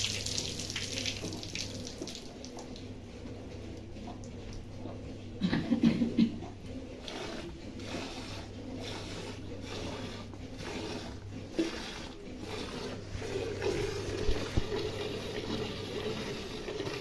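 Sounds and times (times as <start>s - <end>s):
milk squirting into a pail: 7.0s - 17.0s.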